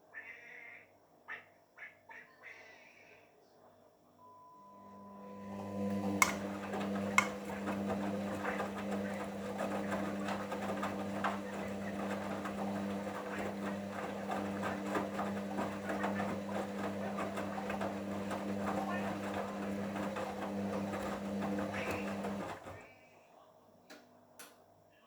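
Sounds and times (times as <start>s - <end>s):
washing machine churning: 5.1s - 22.8s.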